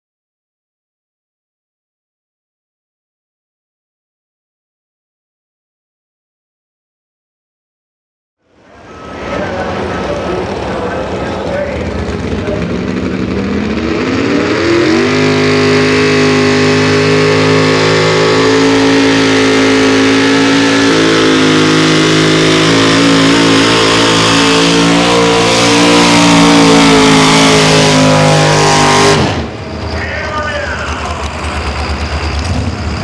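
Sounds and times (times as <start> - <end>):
engine revving at full throttle: 8.7 - 33.0.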